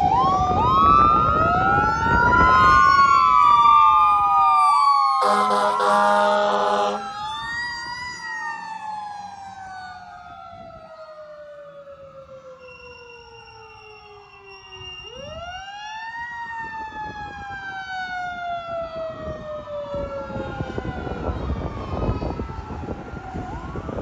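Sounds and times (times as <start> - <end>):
road noise: 0.0 - 12.6
fire engine siren wailing: 0.0 - 24.0
truck engine rumble: 5.2 - 10.1.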